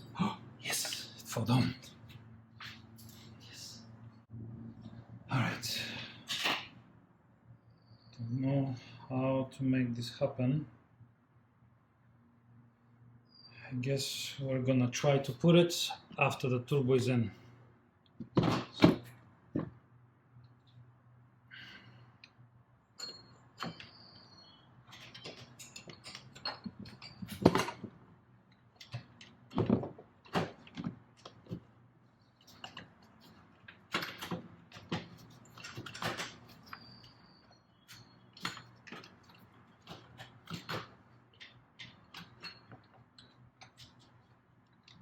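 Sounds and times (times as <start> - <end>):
high metallic rings: 23.0 - 24.1
metal parts and tools clinking: 24.8 - 28.0, 32.4 - 44.2.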